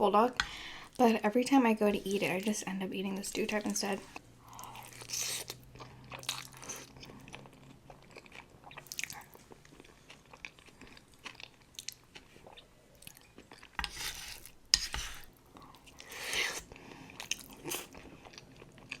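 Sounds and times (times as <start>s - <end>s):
person chewing food: 4.1s - 19.0s.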